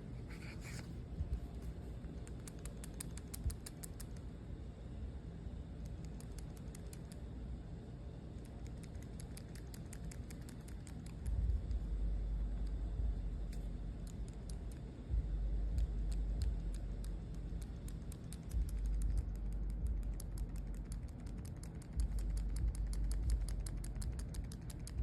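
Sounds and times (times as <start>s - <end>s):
rapid clicking: 2.1s - 4.2s, 5.8s - 7.2s, 8.4s - 11.9s, 13.5s - 14.9s, 15.8s - 25.0s
low rumble: 11.1s - 21.4s, 22.0s - 25.0s.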